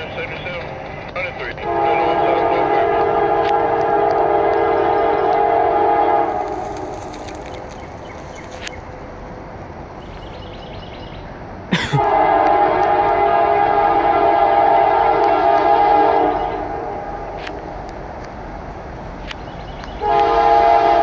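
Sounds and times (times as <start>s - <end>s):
passing freight train rumble: 0.0s - 21.0s
locomotive air horn blast: 1.6s - 7.6s, 11.8s - 17.6s, 20.0s - 21.0s.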